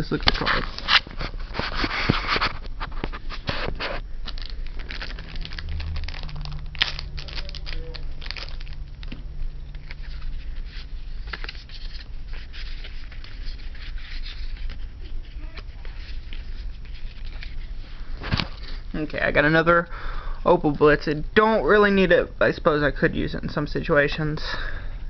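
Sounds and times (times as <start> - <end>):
cards and packaging rustling: 0.0 - 19.2.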